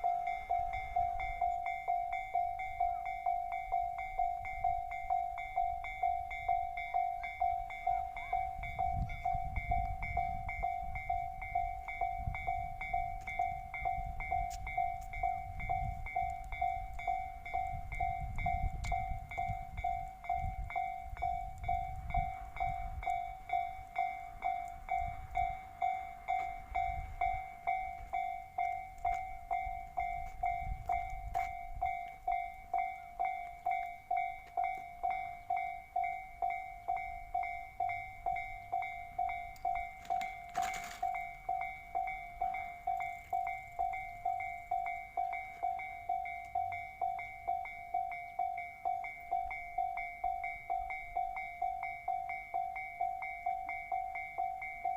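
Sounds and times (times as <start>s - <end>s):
level crossing bell ringing: 0.0s - 54.9s
train rumbling past: 0.0s - 54.9s.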